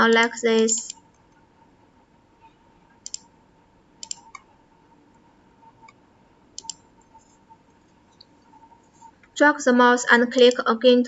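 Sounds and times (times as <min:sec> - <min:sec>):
faint steady hum: 0:00.0 - 0:11.0
computer mouse clicking: 0:03.0 - 0:03.3, 0:04.0 - 0:04.5, 0:06.6 - 0:06.8.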